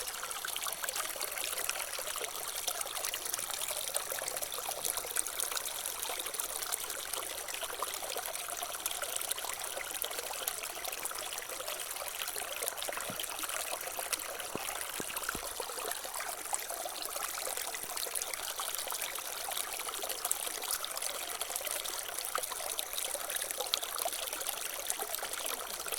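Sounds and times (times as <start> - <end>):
water trickling and splashing: 0.0 - 25.9
small drips: 11.8 - 16.7.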